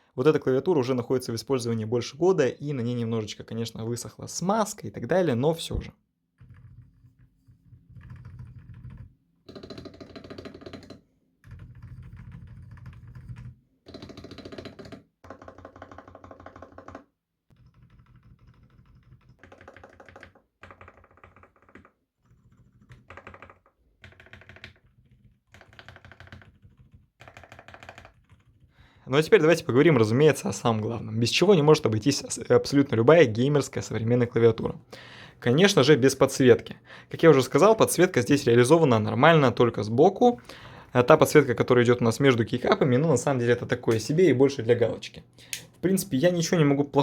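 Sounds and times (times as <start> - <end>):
typing on mechanical keyboard: 6.4 - 28.7.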